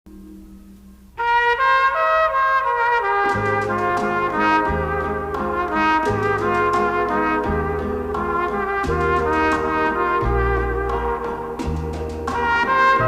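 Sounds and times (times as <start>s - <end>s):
melody of held notes: 0.1s - 1.6s, 3.3s - 13.0s
low rhythmic bass: 3.3s - 13.0s.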